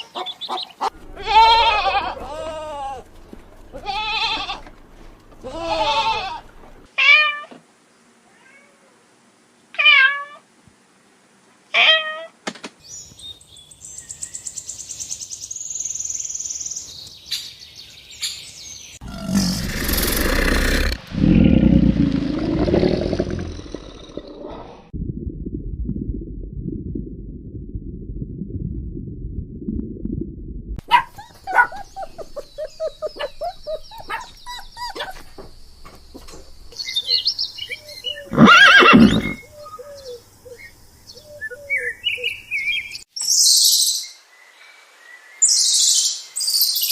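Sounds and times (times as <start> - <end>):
drawn-out animal call: 0.1 - 6.9
animal chirps: 19.0 - 21.0.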